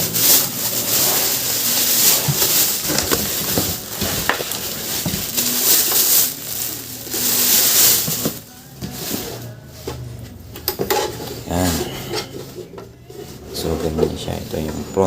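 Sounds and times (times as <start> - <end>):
packaging crinkling and rustling: 0.0 - 9.2
packaging clicks: 1.4 - 8.4.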